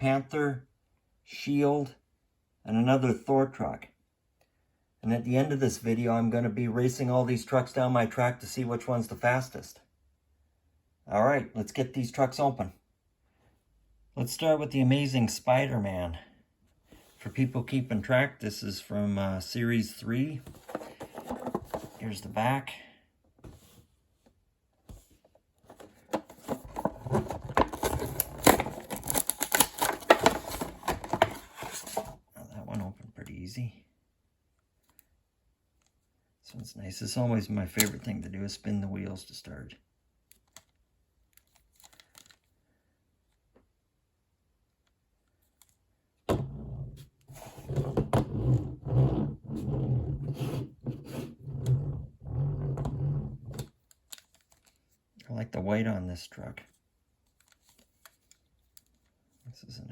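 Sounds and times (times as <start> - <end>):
packaging rustling: 20.5 - 22.0, 25.7 - 32.2, 41.4 - 42.5
packaging clicks: 26.3 - 32.0.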